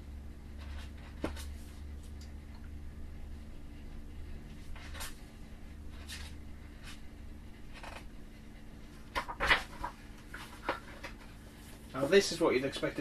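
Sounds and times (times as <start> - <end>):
low steady hum: 0.0 - 13.0
paper rustling: 9.1 - 11.9.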